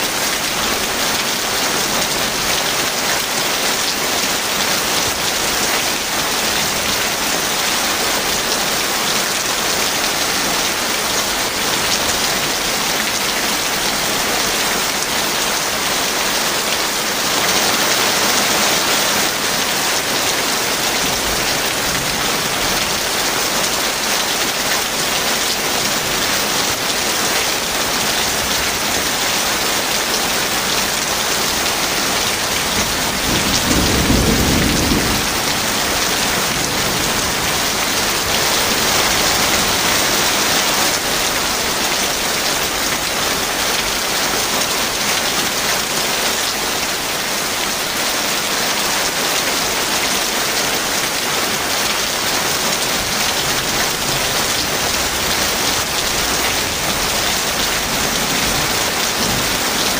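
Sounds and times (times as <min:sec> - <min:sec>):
heavy rain: 0:00.0 - 0:59.9
thunder rumble: 0:32.8 - 0:37.7.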